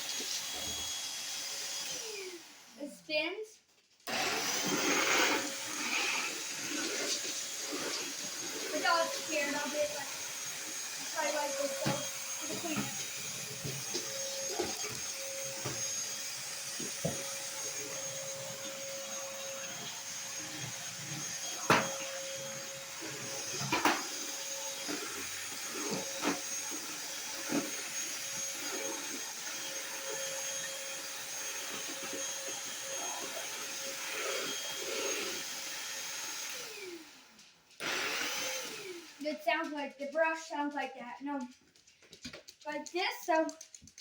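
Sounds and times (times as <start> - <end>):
stick vacuum running: 4.0 - 37.1, 37.8 - 39.9.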